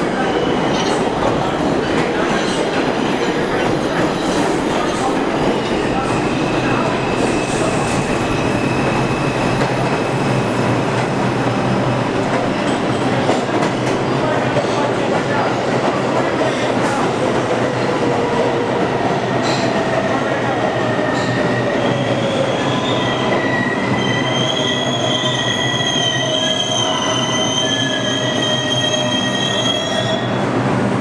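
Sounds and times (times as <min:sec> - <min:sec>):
train wheels rumbling on rail: 0:00.0 - 0:31.0
train wheels squealing: 0:05.7 - 0:12.0, 0:20.8 - 0:30.5.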